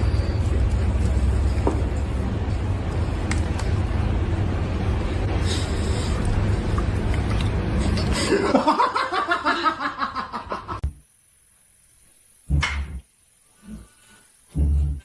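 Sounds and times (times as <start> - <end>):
steady low rumble: 0.0 - 8.2
person laughing: 8.0 - 10.8.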